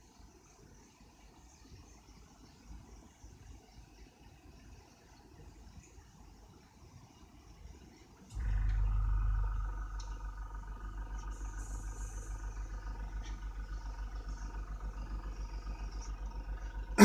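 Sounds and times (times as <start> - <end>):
air compressor pulsing: 8.3 - 17.0.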